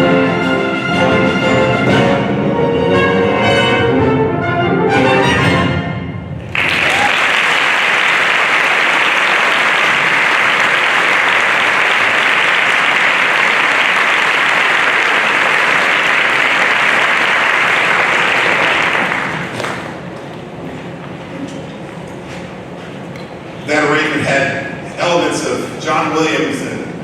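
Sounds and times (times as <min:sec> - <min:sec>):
audience applauding: 0:06.4 - 0:20.3.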